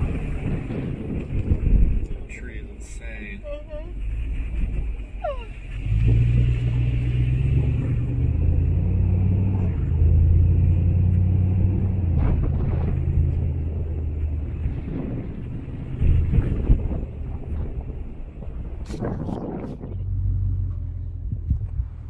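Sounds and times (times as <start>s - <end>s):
engine rumbling: 0.0s - 22.0s.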